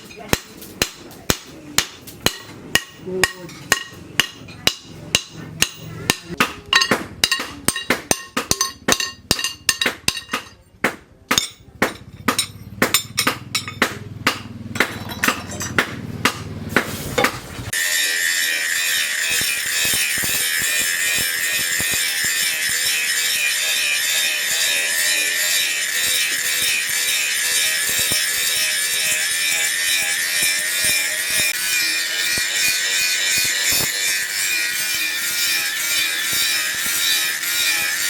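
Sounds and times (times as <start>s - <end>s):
hammer striking anvil: 0.0s - 17.4s.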